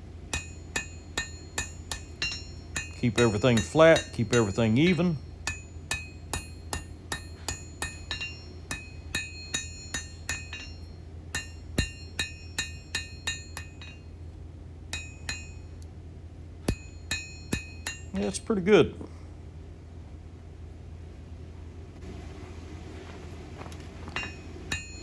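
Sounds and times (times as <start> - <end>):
hammer striking steel on anvil: 0.3 - 14.2, 14.9 - 15.9, 16.7 - 18.3, 24.1 - 25.0.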